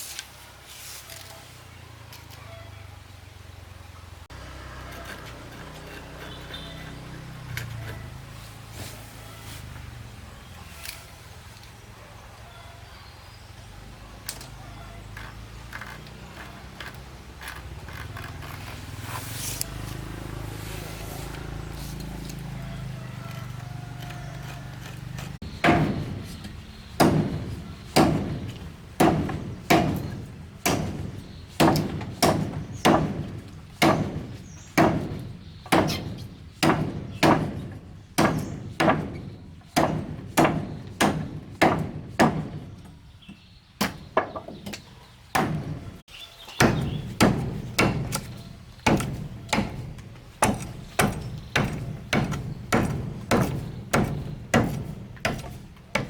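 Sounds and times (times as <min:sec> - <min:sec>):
tool striking wood: 0:25.2 - 0:42.9, 0:43.8 - 0:46.0, 0:46.6 - 0:56.0.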